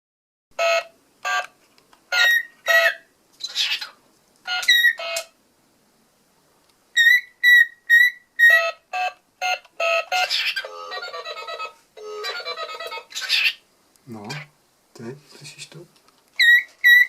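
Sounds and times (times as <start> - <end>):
cockatiel whistling beeps: 0.6 - 1.5, 2.1 - 3.6, 4.5 - 5.3, 7.0 - 12.5, 16.4 - 17.0.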